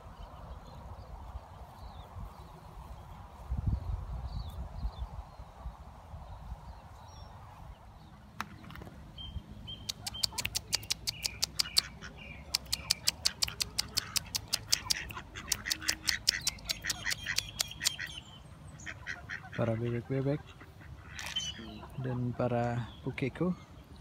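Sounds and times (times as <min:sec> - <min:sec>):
birds chirping: 0:00.0 - 0:24.0
rapid sharp clicks: 0:09.8 - 0:11.9, 0:12.5 - 0:18.0.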